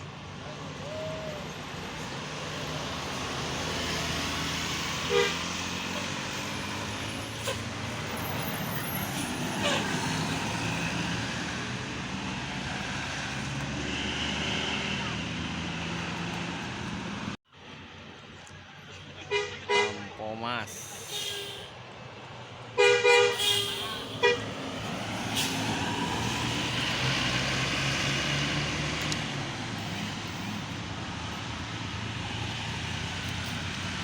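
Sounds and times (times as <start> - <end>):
diesel bus engine running: 0.0 - 34.0
roadside traffic: 0.0 - 34.0
bus horn toot: 5.0 - 5.8, 9.5 - 10.2, 19.2 - 20.1, 21.0 - 21.8, 22.8 - 24.6.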